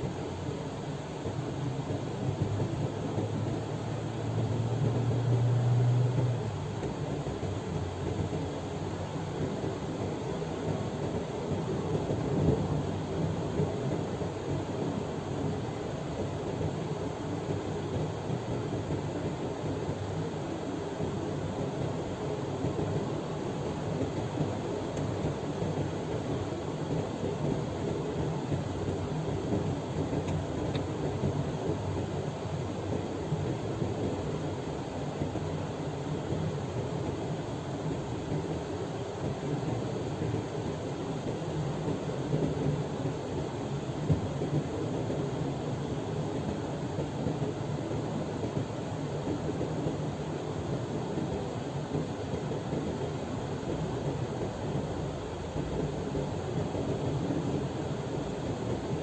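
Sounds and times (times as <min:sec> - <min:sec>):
vehicle engine hum: 0:00.0 - 0:10.8
road noise: 0:00.0 - 0:14.5
vehicle driving on road: 0:00.0 - 0:59.0.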